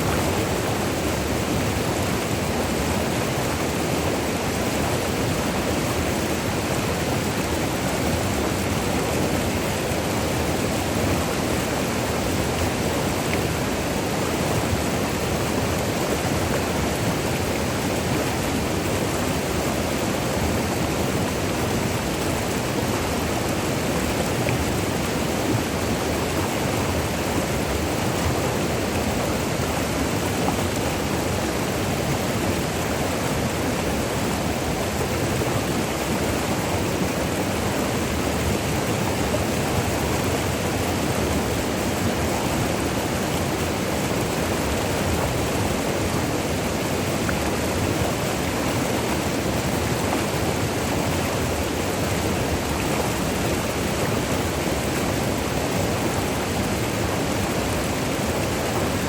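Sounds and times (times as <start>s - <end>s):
river rushing over rapids: 0.0s - 59.0s.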